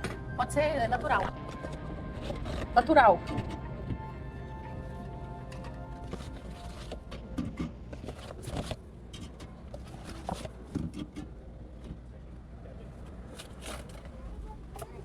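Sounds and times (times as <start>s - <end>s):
steady low hum: 0.0s - 10.7s
drink cans and cardboard handled: 5.6s - 11.3s, 13.3s - 15.0s.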